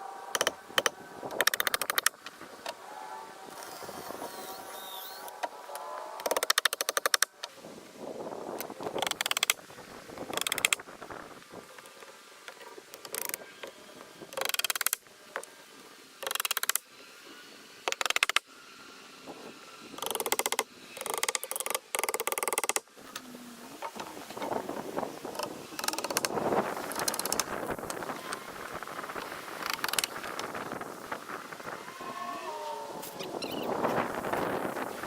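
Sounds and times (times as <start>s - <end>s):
rapid ratchet-like clicking: 20.0s - 22.8s.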